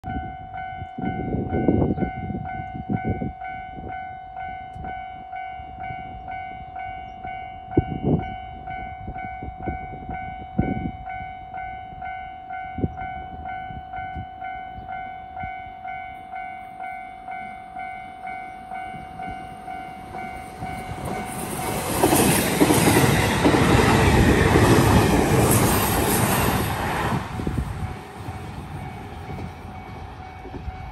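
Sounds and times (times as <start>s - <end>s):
level-crossing alarm ringing: 0.1s - 26.6s
electric train passing: 0.1s - 30.9s.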